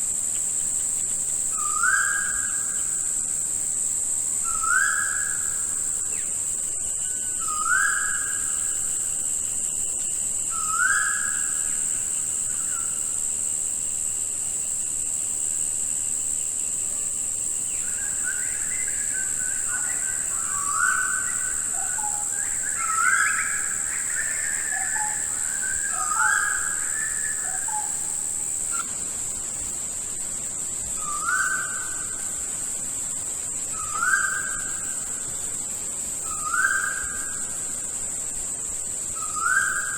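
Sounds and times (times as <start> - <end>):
high-pitched insect drone: 0.0 - 39.9
bird chorus: 17.7 - 28.1.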